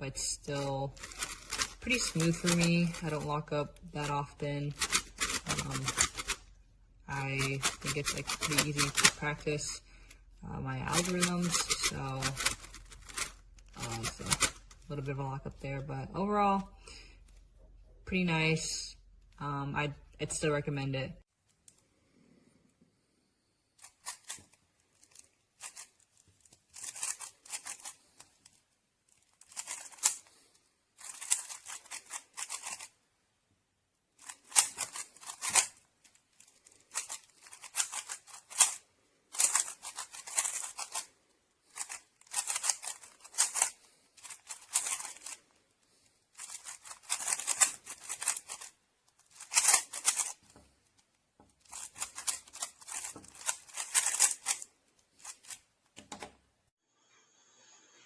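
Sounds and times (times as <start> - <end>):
speed cube clicking turns: 0.5 - 6.5, 7.1 - 9.7, 10.8 - 14.8, 25.1 - 26.0, 26.8 - 28.1, 29.4 - 30.3, 31.0 - 32.9, 34.2 - 35.8, 36.5 - 41.1, 41.7 - 45.5, 46.4 - 50.5, 51.6 - 56.2.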